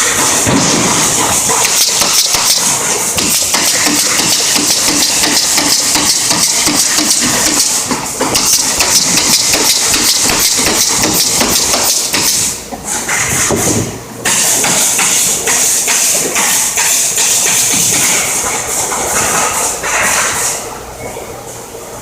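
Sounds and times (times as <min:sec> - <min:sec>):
pneumatic stapler firing into wood: 0:01.6 - 0:12.5.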